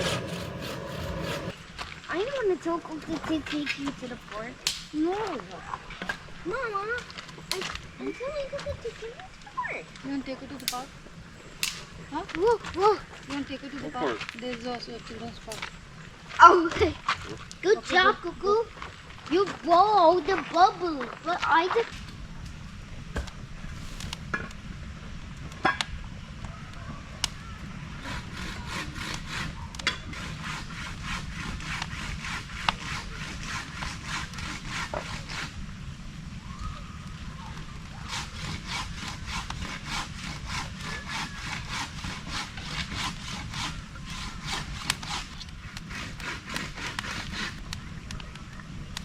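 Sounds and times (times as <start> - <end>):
scraping strokes on wood: 0.0 - 1.6, 28.0 - 35.6, 37.8 - 48.3.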